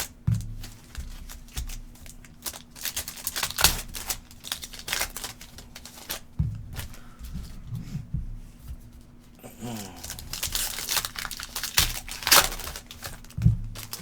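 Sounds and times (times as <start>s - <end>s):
wrappers crinkling: 0.0s - 7.7s, 8.8s - 14.0s.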